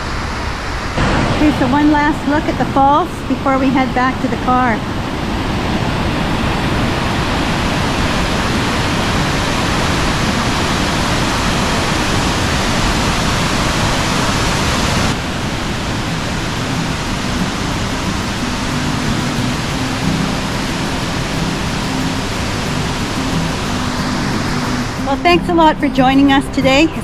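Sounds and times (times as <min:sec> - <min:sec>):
waterfall roaring: 0:00.0 - 0:25.4.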